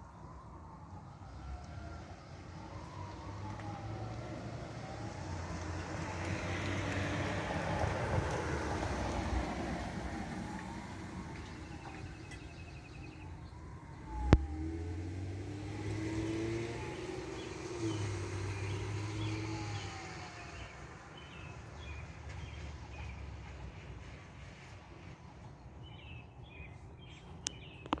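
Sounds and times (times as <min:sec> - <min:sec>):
fire engine siren wailing: 0:00.0 - 0:25.5
birds chirping: 0:11.2 - 0:14.7, 0:15.4 - 0:23.3.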